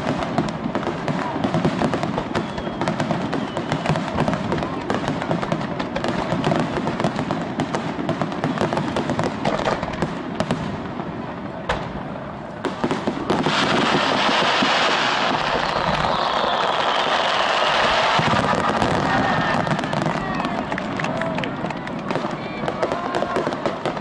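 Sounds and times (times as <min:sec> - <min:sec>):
fireworks bursting and popping: 0:00.0 - 0:24.0
continuous crackle: 0:18.0 - 0:24.0.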